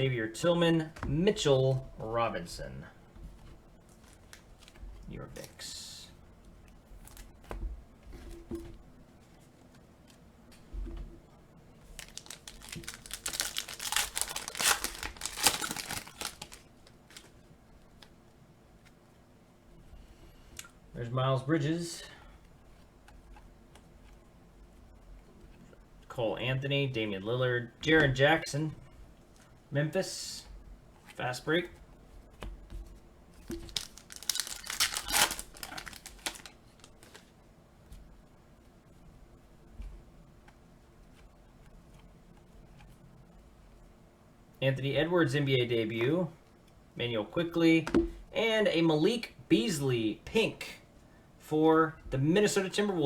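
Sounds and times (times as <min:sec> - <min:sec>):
card pack wrapper crinkling: 0:11.8 - 0:17.4, 0:33.5 - 0:37.3.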